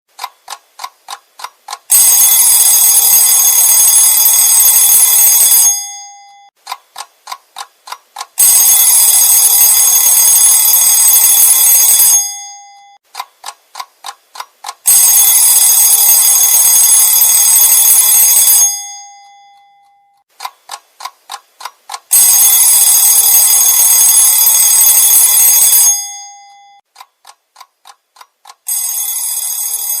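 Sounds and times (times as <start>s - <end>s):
alarm clock ticking: 0.1s - 30.0s
alarm clock bell ringing: 1.9s - 6.5s, 8.4s - 13.0s, 14.9s - 20.3s, 22.1s - 26.8s, 28.7s - 30.0s
quieter different ringing: 18.6s - 20.2s.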